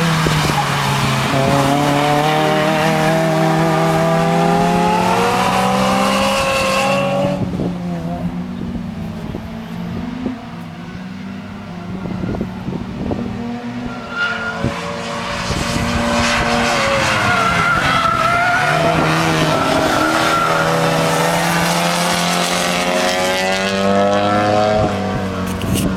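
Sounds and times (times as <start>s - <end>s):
race cars passing: 0.0s - 25.9s
tyre squeal: 13.9s - 15.2s.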